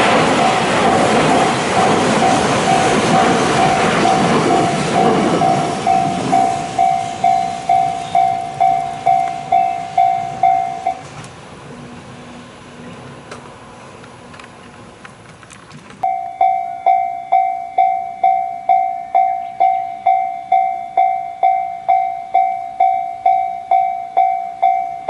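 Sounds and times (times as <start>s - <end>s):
freight train rolling: 0.0s - 25.0s
crossing alarm electronic ding: 2.1s - 11.1s, 16.0s - 25.0s.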